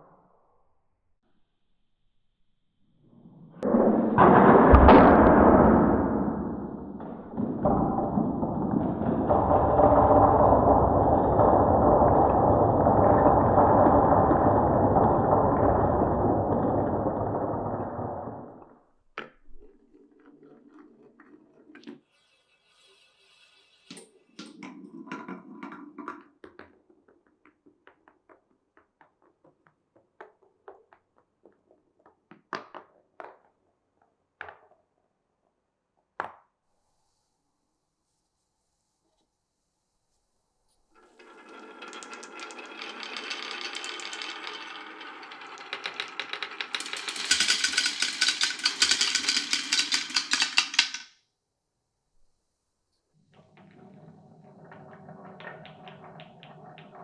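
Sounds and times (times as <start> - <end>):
marbles rolling on wooden track: 3.7 - 33.5, 41.0 - 51.2, 53.3 - 57.0
marbles clicking against track: 41.0 - 51.2.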